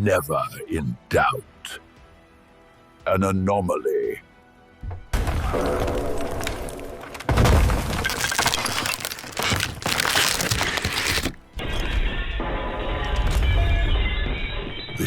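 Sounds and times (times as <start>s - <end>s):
music: 0.0s - 7.4s, 8.6s - 15.0s
crashing and breaking: 7.1s - 11.8s.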